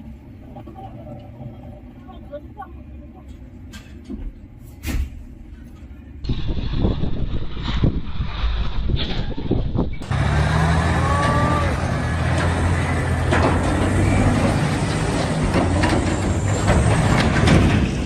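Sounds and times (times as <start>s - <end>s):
diesel engine droning: 5.9s - 18.0s.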